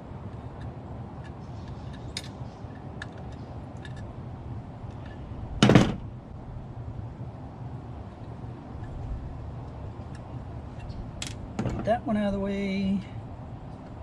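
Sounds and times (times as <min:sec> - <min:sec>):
steady low hum: 0:00.0 - 0:14.0
part clattering on hard surface: 0:05.0 - 0:06.0.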